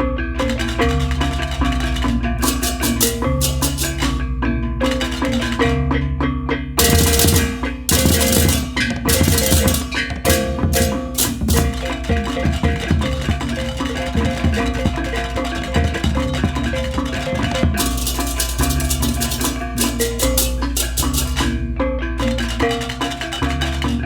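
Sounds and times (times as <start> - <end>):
hand drums: 0.0 - 24.0.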